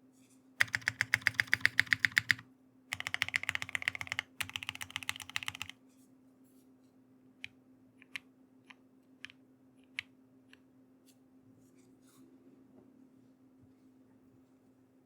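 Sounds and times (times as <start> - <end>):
mechanical keyboard typing: 0.6 - 5.8.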